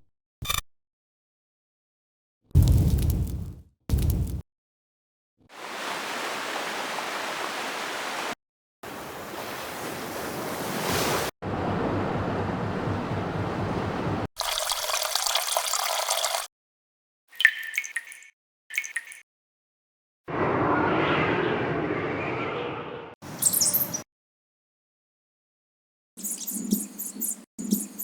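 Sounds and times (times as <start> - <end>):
rushing water: 5.5 - 16.5.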